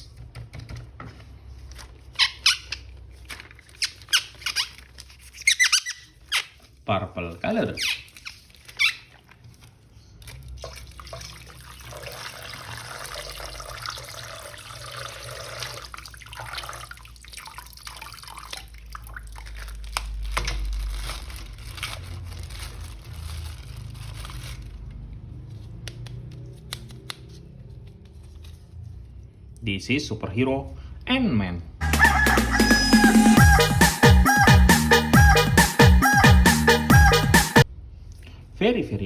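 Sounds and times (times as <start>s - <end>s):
water running and splashing: 10.3s - 20.2s.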